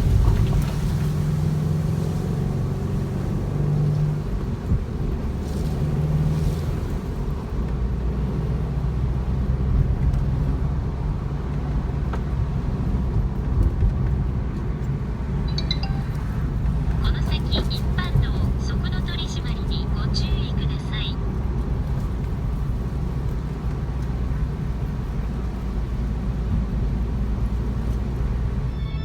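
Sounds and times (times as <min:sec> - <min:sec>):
car engine droning: 0:00.0 - 0:15.5, 0:16.1 - 0:29.0
road rumble: 0:00.0 - 0:29.0.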